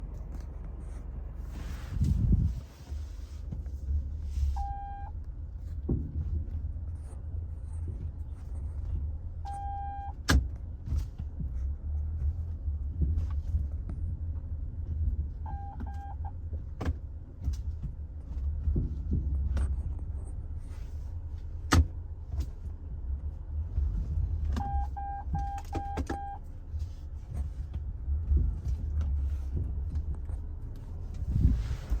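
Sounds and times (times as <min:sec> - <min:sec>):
low car rumble: 0:00.0 - 0:32.0
suspension clunks: 0:00.0 - 0:32.0
short electronic beep: 0:04.6 - 0:05.1, 0:09.5 - 0:10.1, 0:15.5 - 0:16.2, 0:24.6 - 0:26.4.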